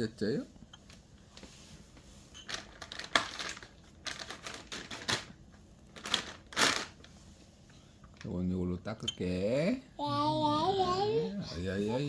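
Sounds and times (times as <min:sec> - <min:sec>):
crinkling rustles: 0:01.2 - 0:07.4.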